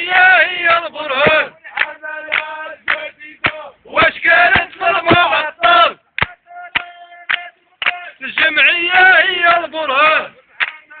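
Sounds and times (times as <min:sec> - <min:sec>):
crowd of men chanting: 0:00.0 - 0:11.0
sharp rhythmic hits: 0:01.2 - 0:05.4.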